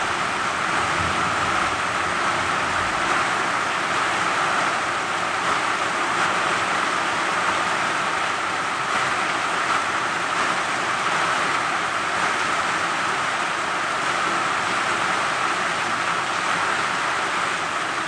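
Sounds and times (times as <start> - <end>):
steady rain: 0.0 - 18.0.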